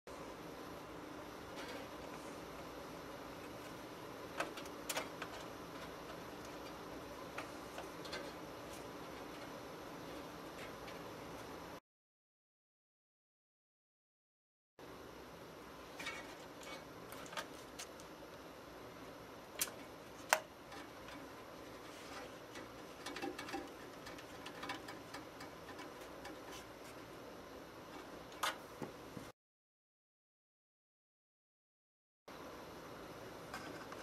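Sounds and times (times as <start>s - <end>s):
steady low hiss: 0.1s - 11.8s.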